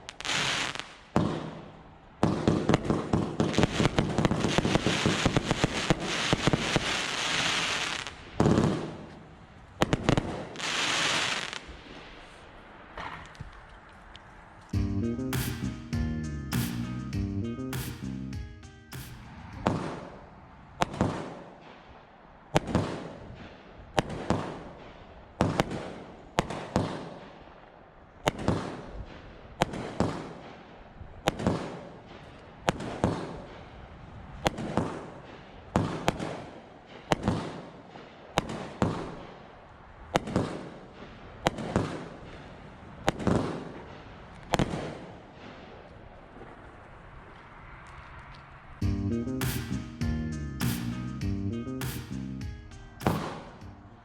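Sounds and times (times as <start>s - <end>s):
fireworks bangs: 0.0s - 13.7s, 18.9s - 27.4s, 53.0s - 53.7s.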